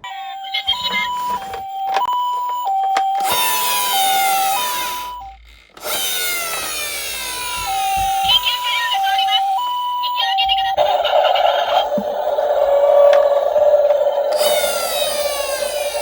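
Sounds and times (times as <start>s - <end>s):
toy siren two-tone wail: 0.0s - 16.0s
toy car rolling whir: 2.9s - 9.7s, 10.8s - 16.0s.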